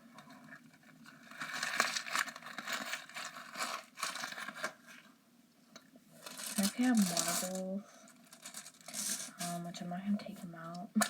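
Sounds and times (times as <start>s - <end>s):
squishy ball crinkling rustle: 0.5s - 5.0s, 6.1s - 9.7s.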